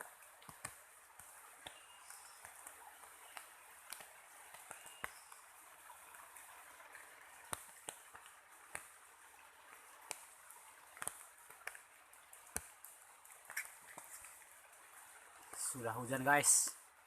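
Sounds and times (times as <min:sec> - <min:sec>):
light rain hiss: 0:00.0 - 0:17.0
raindrops ticking: 0:00.0 - 0:17.0.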